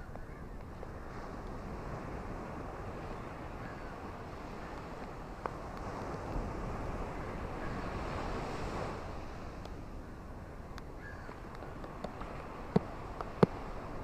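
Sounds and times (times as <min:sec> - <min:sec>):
surf washing on beach: 0:00.6 - 0:14.0.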